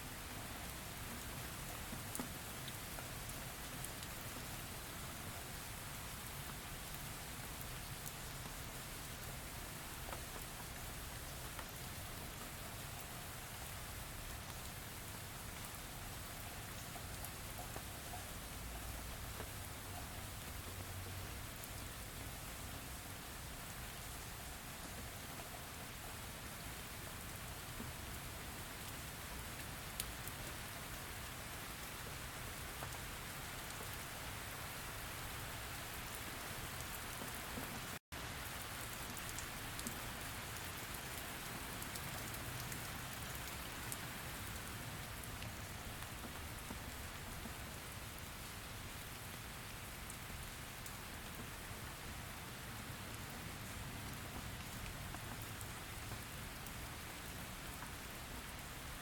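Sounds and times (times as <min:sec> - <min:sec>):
steady rain falling: 0:00.0 - 0:59.0
sharp raindrop ticks: 0:38.9 - 0:40.0.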